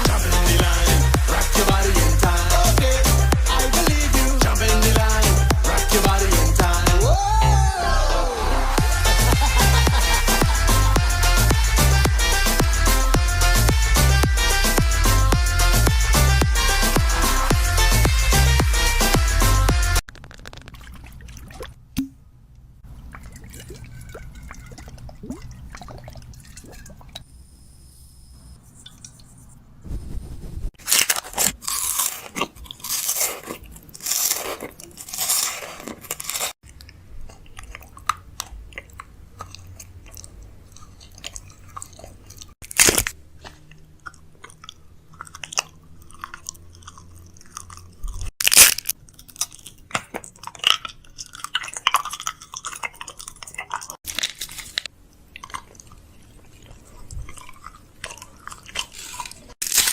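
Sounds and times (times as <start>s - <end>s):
crunching and chewing food: 20.0s - 21.8s, 30.8s - 59.9s.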